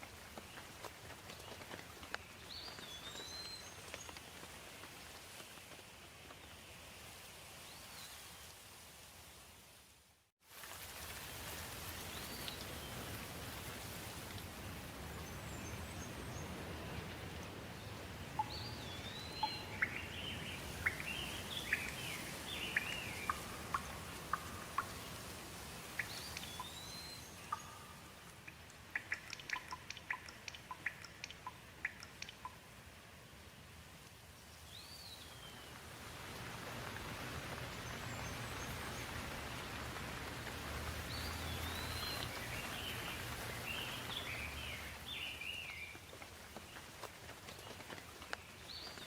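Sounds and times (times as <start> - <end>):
steady rain hiss: 0.0 - 49.0
birds chirping: 15.2 - 32.6, 40.9 - 46.0
sharp ticks: 27.5 - 32.6.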